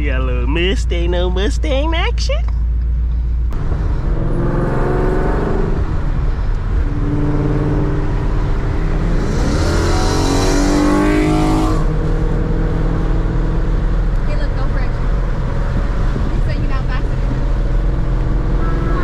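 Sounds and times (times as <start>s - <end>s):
car accelerating past: 3.6s - 14.3s.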